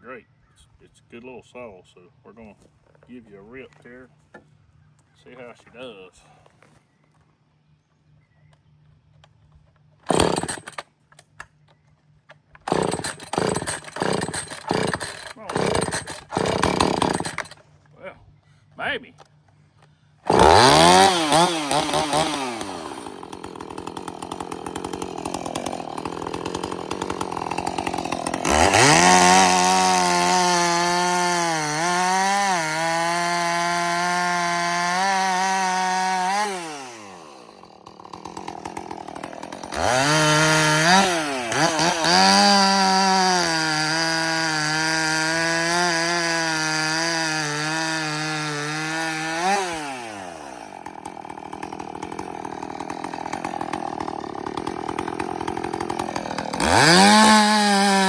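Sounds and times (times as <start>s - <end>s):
chainsaw cutting wood: 9.8s - 11.6s, 12.4s - 17.8s, 19.2s - 58.0s.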